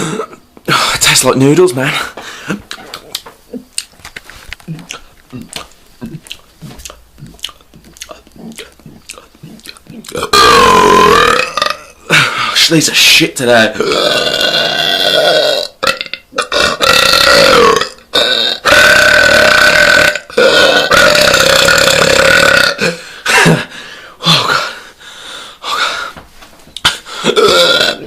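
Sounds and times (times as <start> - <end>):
man burping: 0.0 - 0.8, 4.7 - 12.6, 13.7 - 24.8, 26.8 - 28.0.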